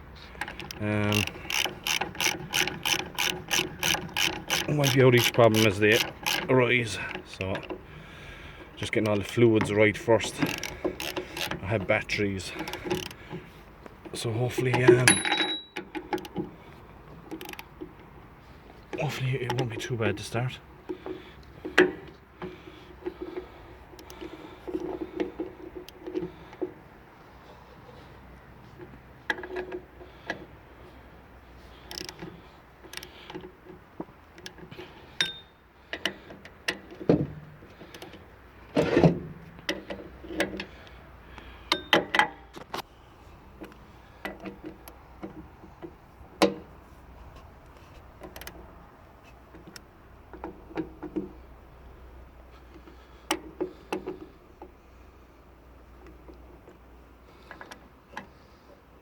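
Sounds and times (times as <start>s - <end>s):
metallic clicks and clanks: 0.3s - 7.8s, 8.8s - 16.6s.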